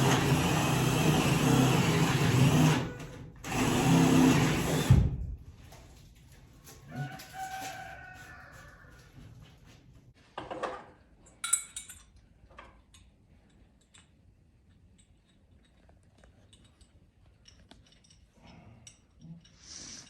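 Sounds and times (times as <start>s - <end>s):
rooster crowing: 6.8s - 9.2s
light metallic clinks and taps: 11.2s - 19.6s.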